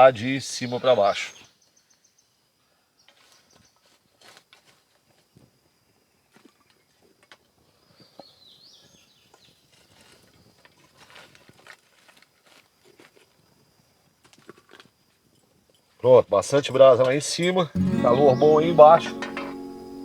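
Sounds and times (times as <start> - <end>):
high insect tone: 15.0 - 20.0
bird chirp: 17.4 - 20.0
pot clinking on embers: 17.4 - 20.0.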